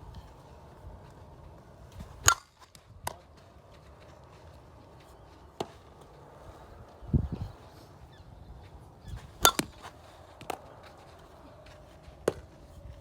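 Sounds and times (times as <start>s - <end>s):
softball cracking off bat or glove: 9.4s - 10.6s.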